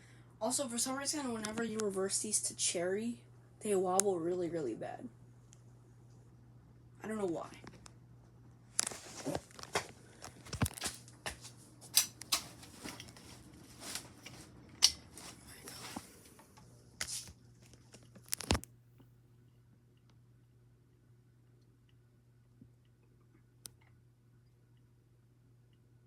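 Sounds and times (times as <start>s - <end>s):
faint low hum: 0.0s - 26.0s
crackling and sharp clicks: 12.0s - 15.3s, 16.6s - 18.7s.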